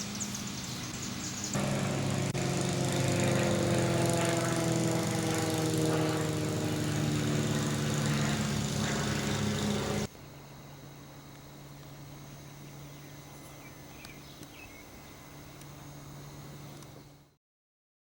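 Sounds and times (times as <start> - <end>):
small engine running: 0.0 - 10.1.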